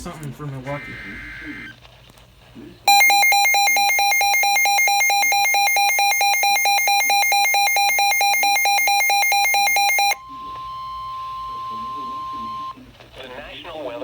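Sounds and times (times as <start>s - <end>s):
rapidly pulsing electronic beeping: 0.0s - 1.8s, 2.9s - 12.8s.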